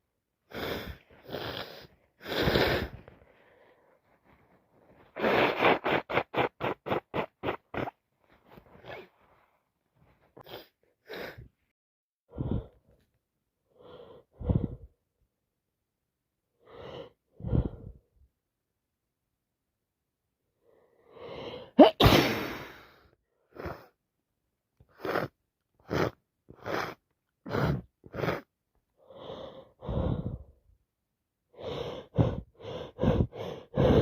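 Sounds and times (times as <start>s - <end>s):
woman gasping breaths: 29.1s - 30.6s, 31.6s - 34.0s
woman's shaky breaths: 29.1s - 30.6s, 31.6s - 34.0s.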